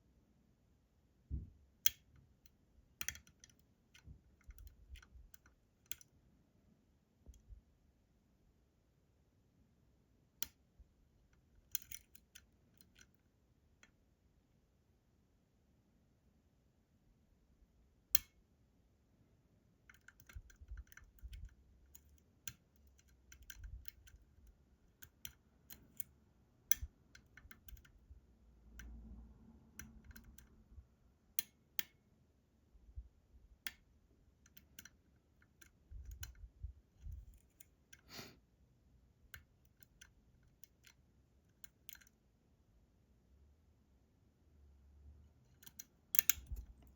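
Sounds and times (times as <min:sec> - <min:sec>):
lock pick metallic clicks: 0:01.8 - 0:06.1, 0:11.3 - 0:14.0, 0:18.1 - 0:18.4, 0:19.8 - 0:28.1, 0:29.7 - 0:30.7, 0:31.4 - 0:32.0, 0:33.6 - 0:38.1, 0:39.3 - 0:42.2, 0:45.5 - 0:46.9.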